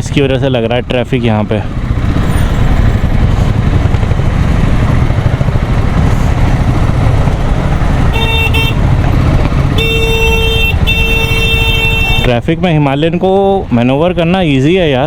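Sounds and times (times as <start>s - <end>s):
motorcycle engine rumble: 0.0s - 15.0s
vehicle horn toots: 8.1s - 8.9s, 9.7s - 12.3s.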